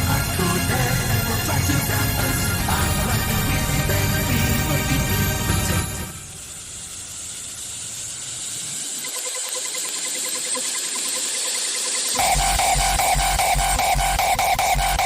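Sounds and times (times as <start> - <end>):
lead synth: 0.0 - 6.7, 12.1 - 15.0
fast pulsing tone: 0.0 - 15.0.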